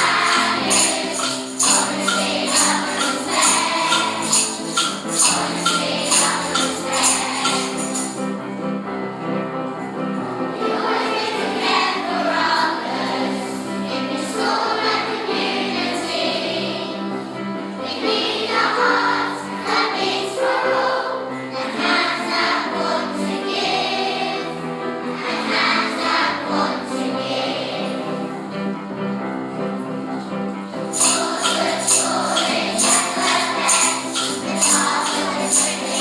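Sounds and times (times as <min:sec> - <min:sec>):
group of voices singing: 0:00.0 - 0:08.2, 0:10.6 - 0:17.0, 0:17.8 - 0:28.2, 0:30.9 - 0:36.0
instrumental backing music: 0:00.0 - 0:36.0.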